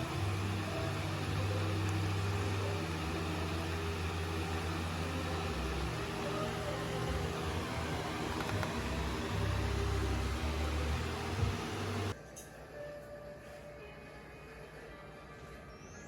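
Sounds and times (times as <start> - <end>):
low engine hum: 0.0 - 12.2.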